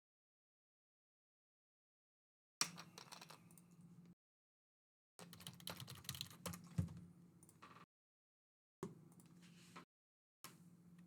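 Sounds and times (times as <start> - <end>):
computer keyboard typing: 5.2 - 6.9.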